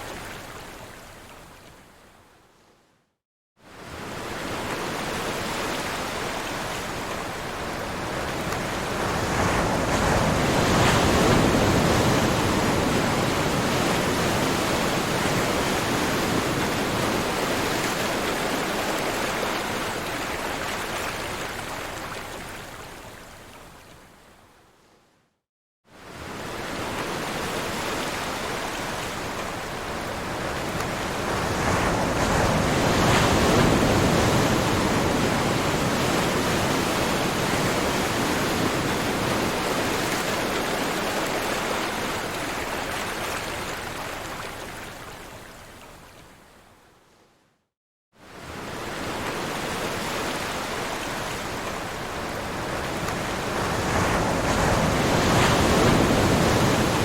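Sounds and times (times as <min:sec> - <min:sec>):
ocean waves breaking: 0:48.3 - 0:57.0.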